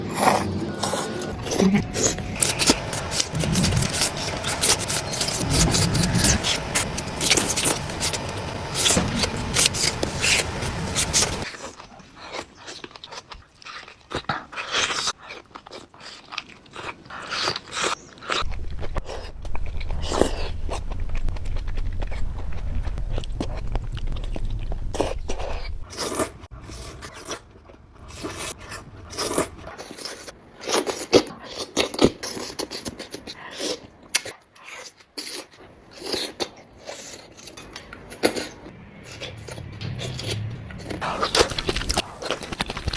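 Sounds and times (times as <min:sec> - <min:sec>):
crunchy chewing: 0:00.0 - 0:42.9
low steady hum: 0:00.5 - 0:11.5.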